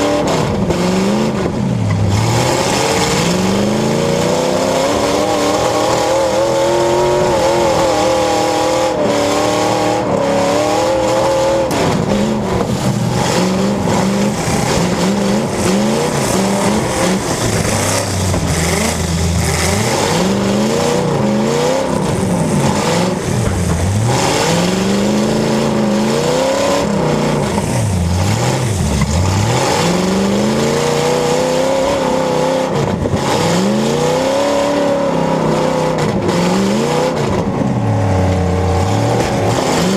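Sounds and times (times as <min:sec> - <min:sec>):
car engines revving: 0:00.0 - 0:39.9
cars ramming each other: 0:00.0 - 0:39.9.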